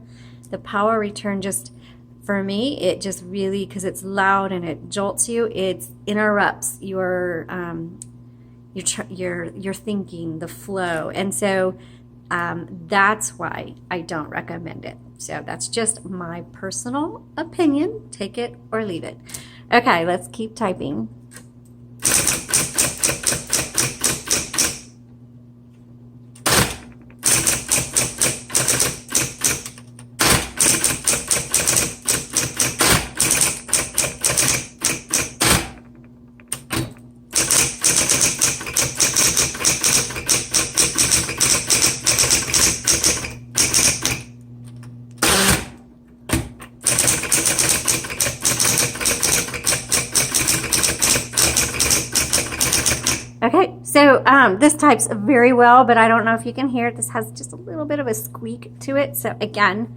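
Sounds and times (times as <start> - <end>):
electric typewriter key strikes: 22.0 - 24.9, 26.4 - 35.9, 36.5 - 44.3, 45.2 - 53.3
typewriter motor humming: 22.0 - 25.0, 26.4 - 53.4.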